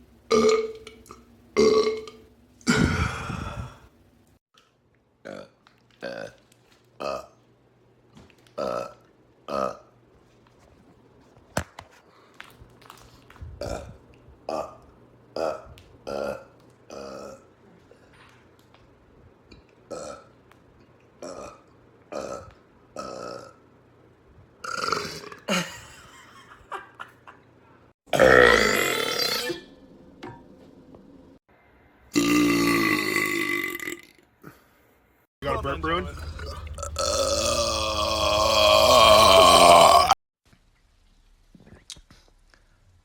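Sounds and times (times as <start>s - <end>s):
man burping: 0.3s - 0.8s, 1.6s - 3.8s, 13.6s - 14.8s, 15.4s - 17.5s, 24.6s - 25.8s, 28.1s - 29.6s, 32.1s - 34.6s, 35.5s - 40.2s.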